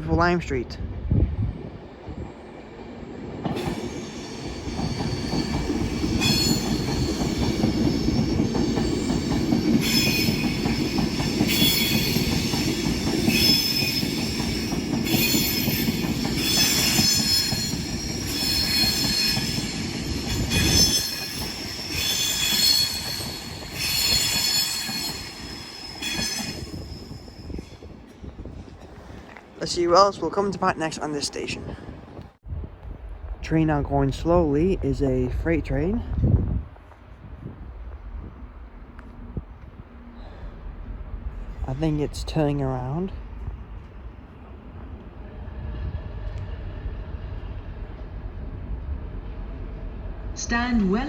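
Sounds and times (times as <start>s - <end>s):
train wheels rumbling on rails: 0.9s - 31.1s
high-pitched wheel squeal: 13.3s - 27.8s.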